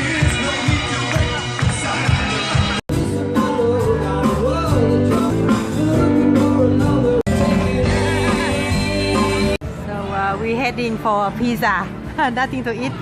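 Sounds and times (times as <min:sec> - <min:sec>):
person singing: 0:00.0 - 0:09.6
guitar: 0:00.0 - 0:13.0.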